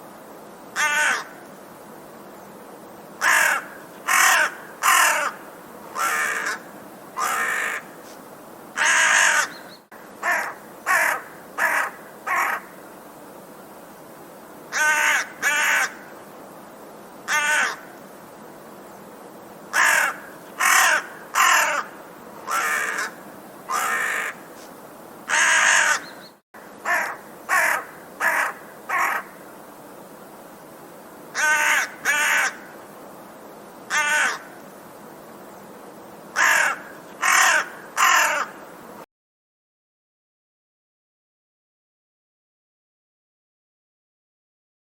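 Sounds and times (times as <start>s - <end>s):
faint background hiss: 0.0s - 39.1s
crow cawing: 0.8s - 1.4s, 3.2s - 5.4s, 6.0s - 7.9s, 8.8s - 9.6s, 10.2s - 12.8s, 14.7s - 16.1s, 17.3s - 17.9s, 19.7s - 24.4s, 25.3s - 26.1s, 26.8s - 29.4s, 31.3s - 32.7s, 33.9s - 34.5s, 36.4s - 38.6s.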